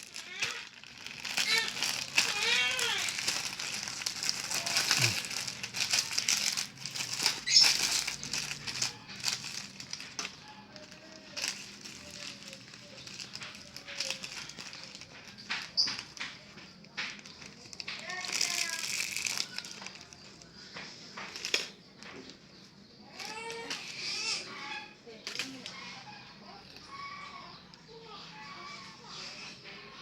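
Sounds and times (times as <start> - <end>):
packaging crinkling and crackling: 0.0 - 21.8, 25.2 - 25.7.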